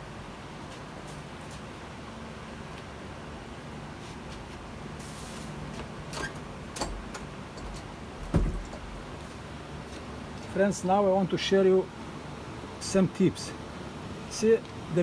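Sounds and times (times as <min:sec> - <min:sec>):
steady low hum: 0:00.0 - 0:15.0
short hiss: 0:05.0 - 0:05.6
knocks and clatters: 0:06.8 - 0:09.0.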